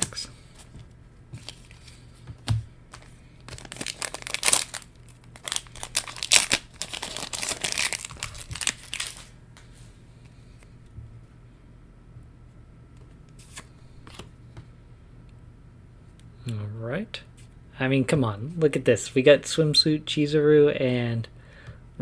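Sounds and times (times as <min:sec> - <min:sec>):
wrapper tearing and crinkling: 0:02.9 - 0:09.4.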